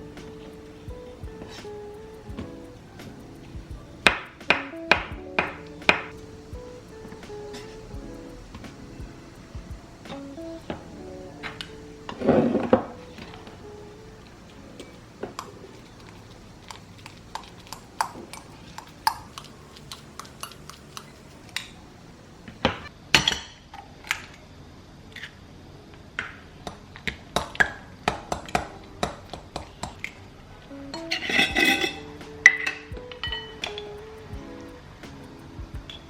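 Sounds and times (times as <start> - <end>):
utensils and dishes clinking: 31.0 - 33.9.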